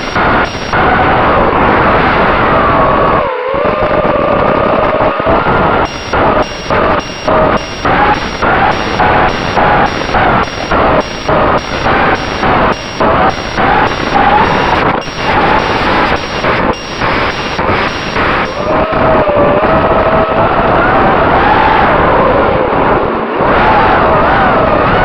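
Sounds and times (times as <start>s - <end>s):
drone beeping: 0.0s - 1.1s, 5.3s - 19.8s
noisy background: 0.0s - 25.0s.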